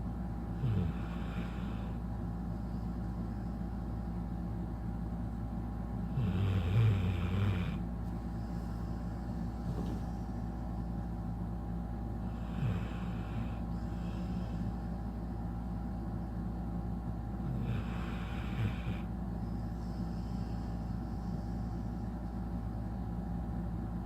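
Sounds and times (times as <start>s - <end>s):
steady low hum: 0.0s - 24.0s
dog snoring: 0.5s - 2.0s, 6.0s - 10.2s, 12.2s - 14.9s, 17.3s - 22.1s.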